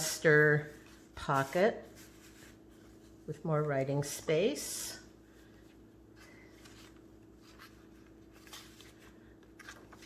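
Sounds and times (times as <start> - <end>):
low steady hum: 0.0 - 10.0
paper rustling: 6.2 - 10.0.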